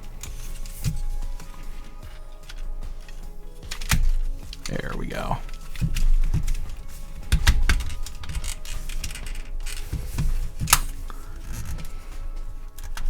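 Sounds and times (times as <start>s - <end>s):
plastic toy parts clicking: 0.0s - 4.7s, 5.4s - 13.0s
plastic parts rubbing: 0.0s - 13.0s.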